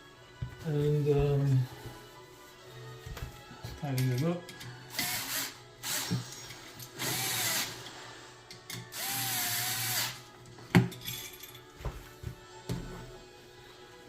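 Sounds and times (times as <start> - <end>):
cordless drill whirring: 4.9 - 6.2, 7.0 - 7.8, 9.0 - 10.2.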